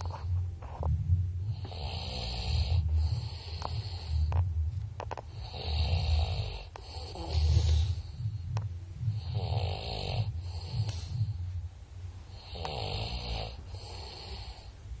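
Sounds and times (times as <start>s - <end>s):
person snoring: 1.4s - 4.4s, 5.3s - 11.5s, 12.3s - 14.7s.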